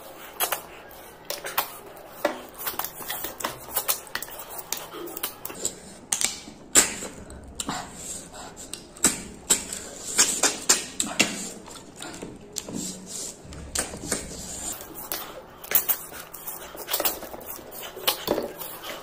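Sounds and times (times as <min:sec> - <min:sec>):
chewing and sucking food: 0:07.0 - 0:19.0.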